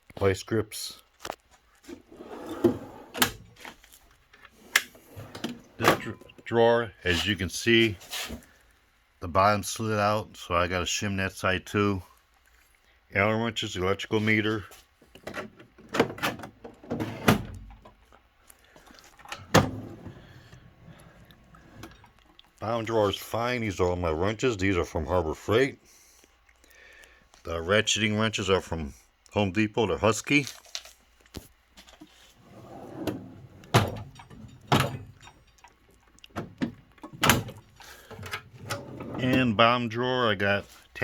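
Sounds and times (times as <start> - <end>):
drawer slide rumble: 2.0 - 3.6, 4.6 - 6.1, 16.6 - 17.6, 19.4 - 22.0, 32.4 - 35.2, 37.1 - 39.4
drawers banging shut: 2.1 - 3.6, 15.3 - 17.7, 19.4 - 20.3, 32.4 - 35.2, 38.2 - 39.4.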